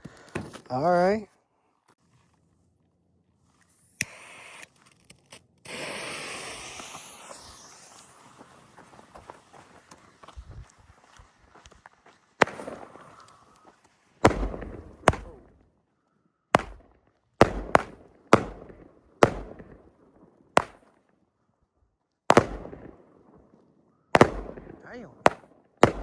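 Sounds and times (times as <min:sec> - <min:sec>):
firework bangs echoing: 0:05.7 - 0:09.8, 0:12.4 - 0:13.3, 0:14.2 - 0:15.6, 0:16.6 - 0:20.9, 0:22.3 - 0:23.2, 0:24.2 - 0:26.0.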